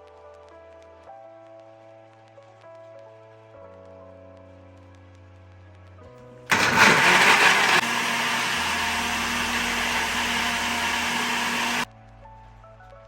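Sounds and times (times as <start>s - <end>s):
electric blender whirring: 6.5s - 11.9s.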